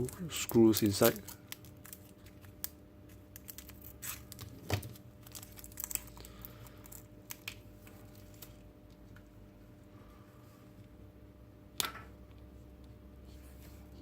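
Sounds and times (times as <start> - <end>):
plastic packet crinkling: 0.0 - 8.6.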